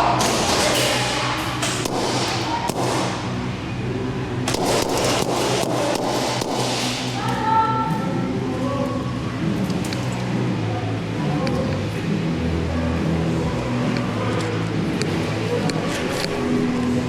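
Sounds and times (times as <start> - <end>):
background music: 0.0 - 17.0
airsoft guns firing: 0.1 - 3.5, 4.4 - 7.4.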